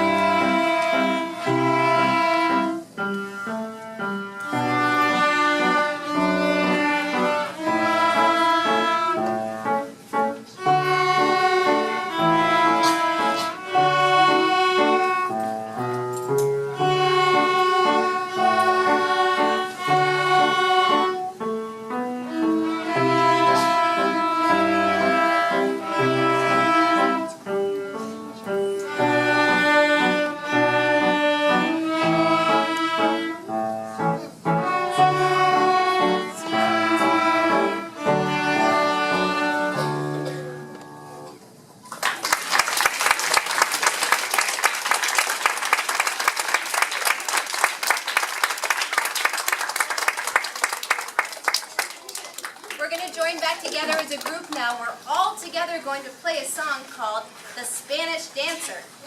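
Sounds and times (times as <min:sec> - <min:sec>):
string ensemble playing: 0:00.0 - 0:41.4
audience applause: 0:41.9 - 0:54.9.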